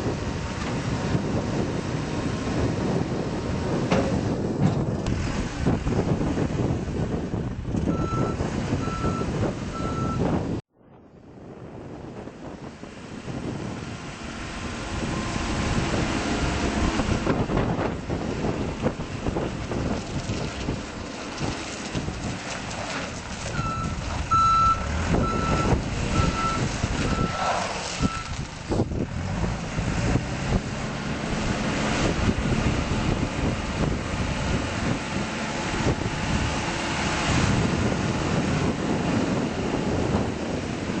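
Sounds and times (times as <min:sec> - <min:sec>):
diesel engine running: 0:11.8 - 0:41.0.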